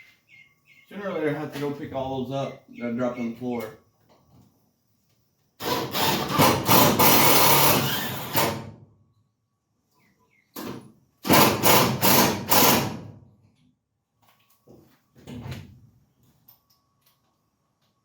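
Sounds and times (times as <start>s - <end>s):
handheld power tool running: 5.6s - 8.6s, 11.3s - 13.0s.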